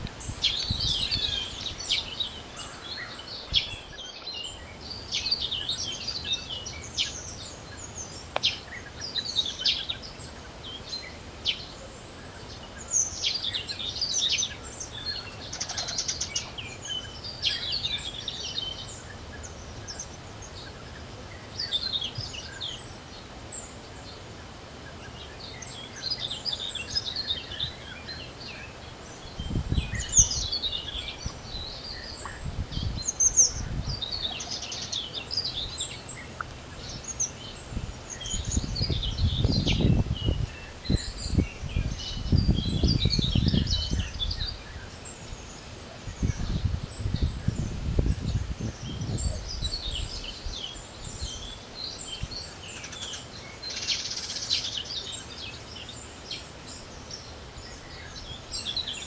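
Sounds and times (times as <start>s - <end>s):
wind rumbling on microphone: 0.0s - 8.4s, 28.8s - 52.5s
songbirds singing and chirping: 0.0s - 59.0s.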